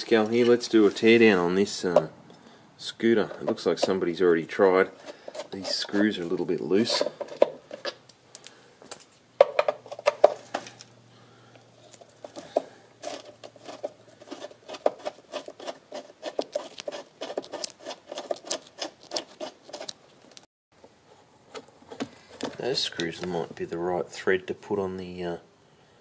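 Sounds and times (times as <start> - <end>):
screwdriver clicking and scraping: 4.8 - 10.4, 12.0 - 20.4.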